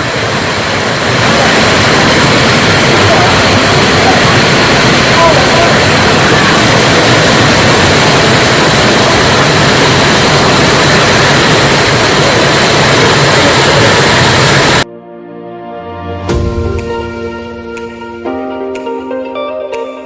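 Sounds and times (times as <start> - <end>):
waterfall roaring: 0.0 - 14.8.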